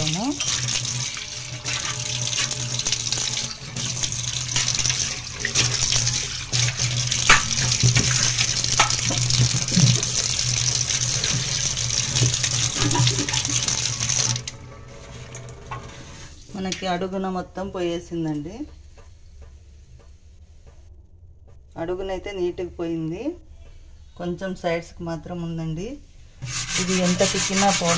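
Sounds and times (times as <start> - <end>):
tap water running into sink: 0.0 - 16.9.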